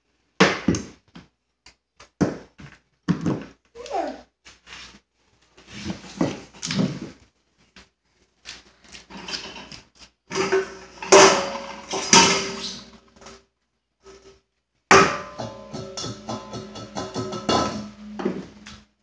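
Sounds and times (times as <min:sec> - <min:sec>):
dishes clinking and clattering: 0:10.3 - 0:13.0, 0:15.2 - 0:18.7.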